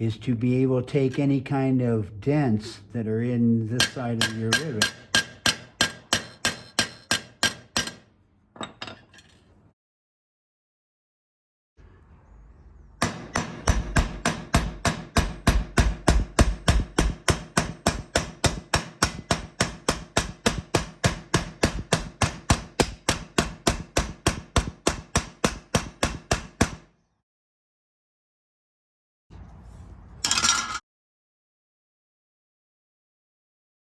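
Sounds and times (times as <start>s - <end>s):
rapid hammer blows on steel rivet: 3.8s - 8.1s, 13.0s - 26.8s.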